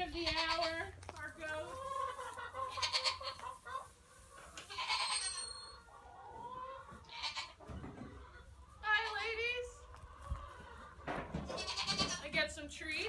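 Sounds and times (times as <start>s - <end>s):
goats bleating: 2.2s - 3.4s, 4.6s - 5.5s, 7.0s - 7.6s, 11.5s - 12.3s.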